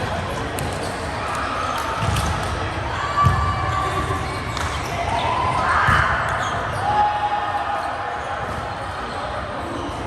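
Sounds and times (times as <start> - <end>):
shoes squeaking on court floor: 5.9 - 6.8, 8.1 - 10.0.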